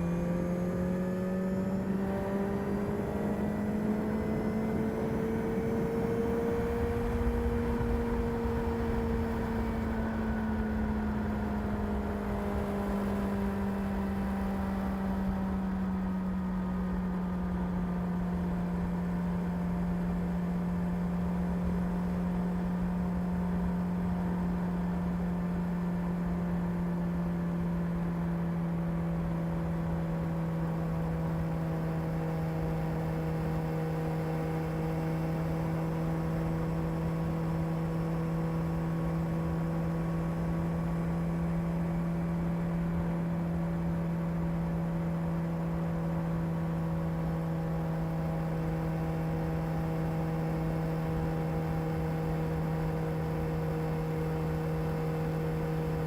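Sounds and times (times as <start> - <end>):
motorcycle engine running steadily: 0.0 - 56.0.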